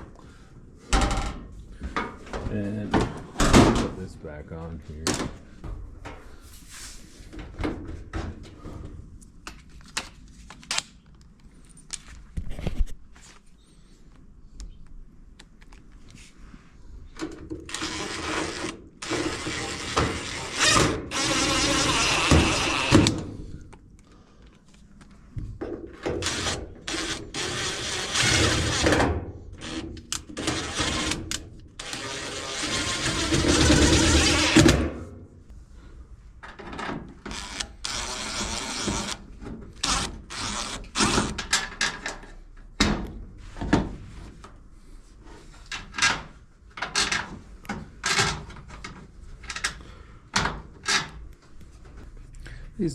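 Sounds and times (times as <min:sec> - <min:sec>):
metal scraping and rattling: 0:31.9 - 0:35.0.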